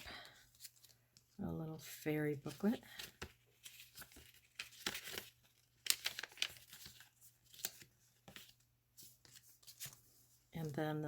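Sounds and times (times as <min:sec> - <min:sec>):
paper rustling and crinkling: 0:00.0 - 0:01.4, 0:02.3 - 0:10.8.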